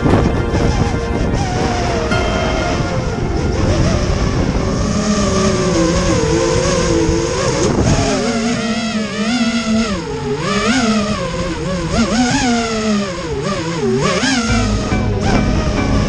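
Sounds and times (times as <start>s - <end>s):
wind buffeting microphone: 0.0s - 8.8s
drone propellers whining: 0.0s - 16.0s.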